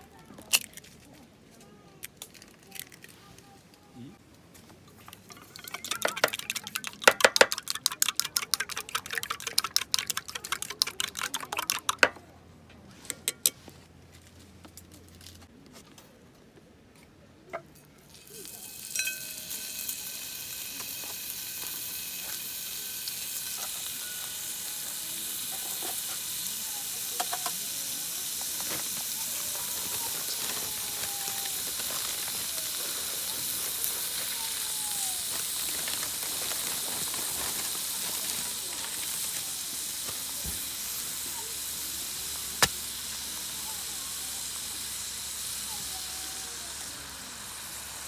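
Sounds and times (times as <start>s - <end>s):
beef sizzling in a pan: 18.2s - 48.0s.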